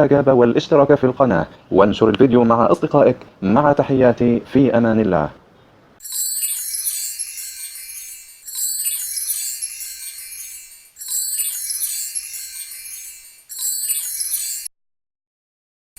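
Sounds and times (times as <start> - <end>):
tinkling chimes: 6.0 - 14.7.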